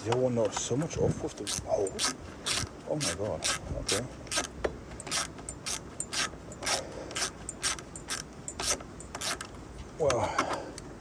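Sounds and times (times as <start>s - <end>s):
ratchet tool clicking: 1.4s - 9.5s.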